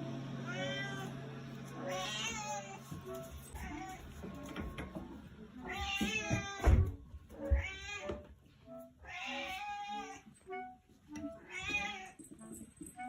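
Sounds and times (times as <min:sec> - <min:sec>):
cat meowing: 0:00.5 - 0:01.1, 0:01.8 - 0:02.8, 0:09.0 - 0:10.2, 0:11.4 - 0:12.2.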